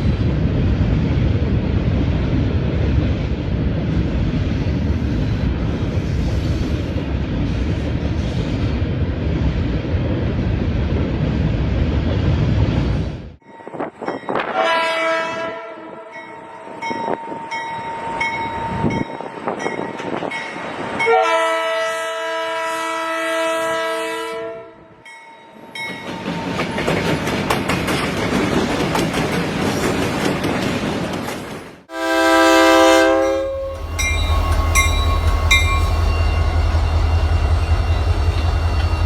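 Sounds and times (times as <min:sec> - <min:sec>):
train rumble with clicking wheels: 0:00.0 - 0:15.5, 0:16.2 - 0:23.7, 0:25.4 - 0:39.0
train horn blast: 0:14.4 - 0:16.4, 0:21.0 - 0:25.0, 0:31.9 - 0:39.0.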